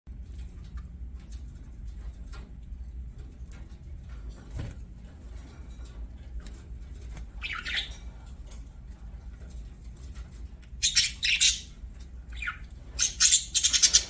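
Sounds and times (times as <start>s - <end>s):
budgerigars chirping: 7.4s - 8.0s, 10.8s - 14.0s.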